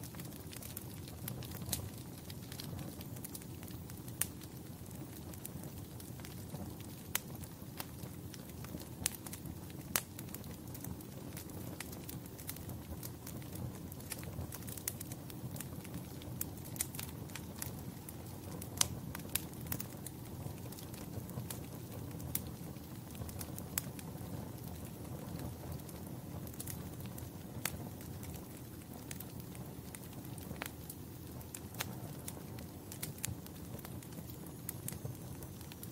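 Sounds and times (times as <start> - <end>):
wood fire crackling: 0.0 - 35.9.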